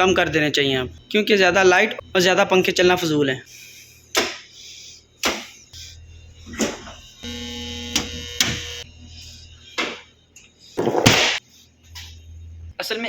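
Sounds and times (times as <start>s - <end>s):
low electrical hum: 0.0s - 13.0s
electrical buzz: 5.8s - 9.8s.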